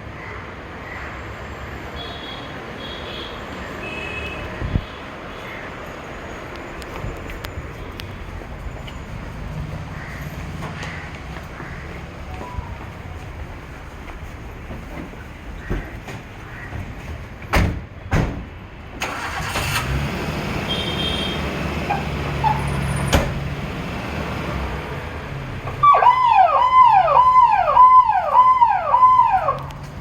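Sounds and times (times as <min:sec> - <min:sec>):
vehicle engine rumbling: 0:06.5 - 0:30.0
electronic siren wailing: 0:25.8 - 0:29.7.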